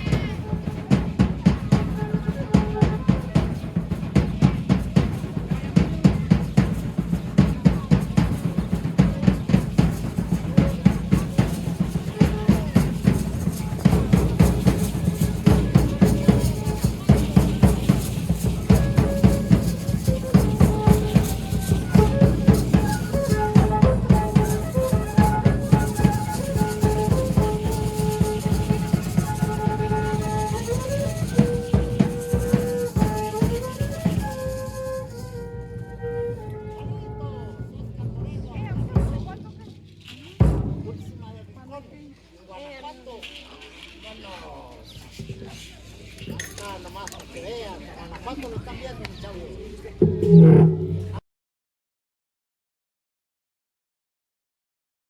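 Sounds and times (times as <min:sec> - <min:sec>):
drum beating fast rhythm: 0:00.0 - 0:36.0, 0:37.6 - 0:41.6.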